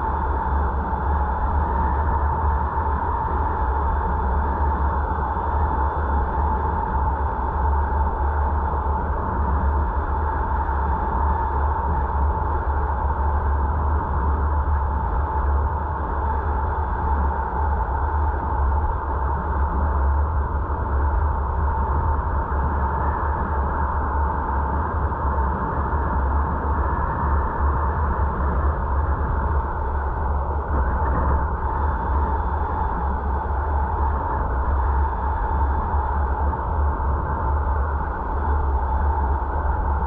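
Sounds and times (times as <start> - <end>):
car road and wind noise: 18.4 - 40.0.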